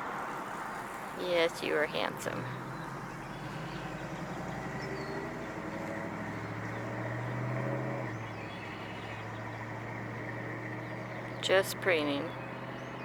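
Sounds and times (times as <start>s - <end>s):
engine humming: 0.0s - 13.0s
faint bird chirps: 8.1s - 11.5s.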